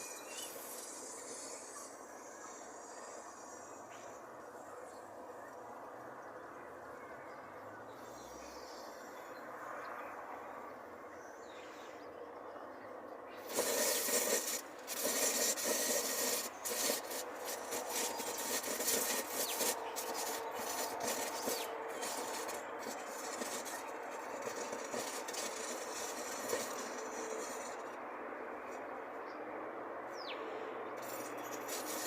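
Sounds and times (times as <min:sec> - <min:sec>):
burning battery hissing and crackling: 0:00.0 - 0:03.8, 0:13.4 - 0:28.0, 0:31.0 - 0:32.0.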